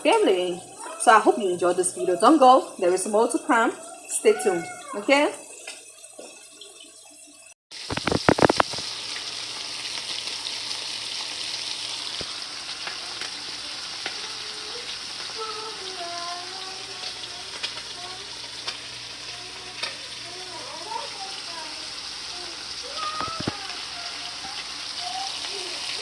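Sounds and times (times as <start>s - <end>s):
meat sizzling in oil: 0.0s - 26.0s
oil popping: 7.8s - 10.2s, 22.3s - 26.0s.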